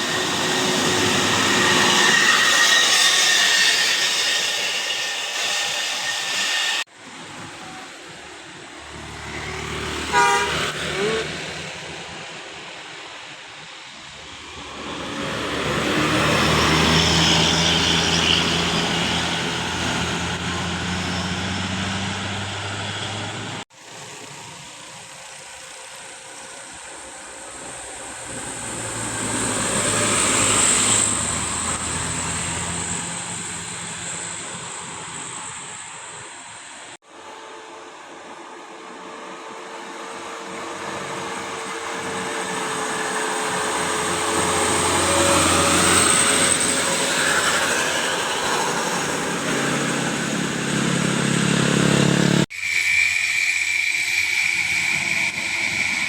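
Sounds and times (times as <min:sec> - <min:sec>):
buses passing on road: 0:00.0 - 0:56.0
loud horn blast: 0:09.6 - 0:11.6.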